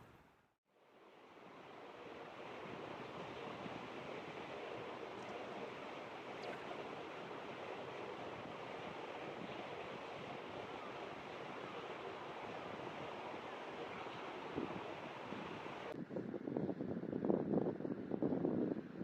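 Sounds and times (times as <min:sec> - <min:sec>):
steady outdoor rushing noise: 0:01.1 - 0:16.0.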